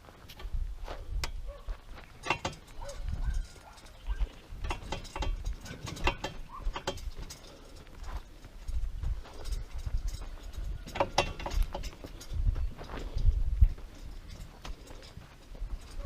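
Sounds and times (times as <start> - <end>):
mechanical clicks and knocks: 2.2 - 7.4, 9.5 - 12.3.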